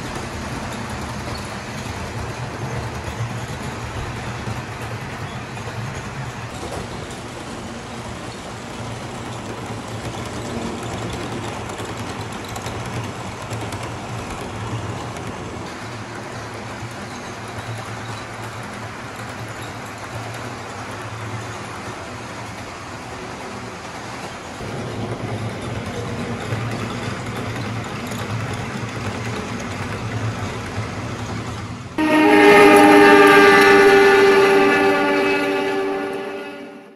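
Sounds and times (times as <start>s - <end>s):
faint clicking from rails: 0.0s - 32.0s
model train humming: 0.0s - 36.9s
multi-tone train horn: 32.0s - 36.9s.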